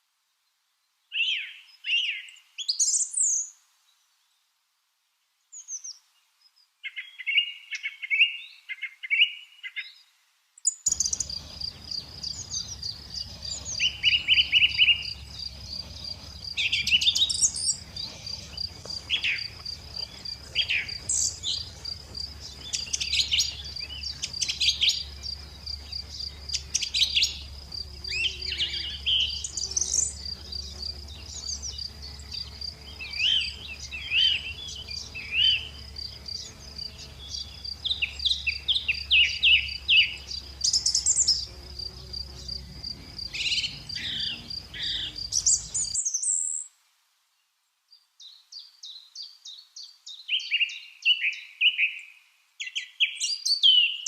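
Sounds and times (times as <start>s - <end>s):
lovebirds chirping: 10.7s - 46.7s.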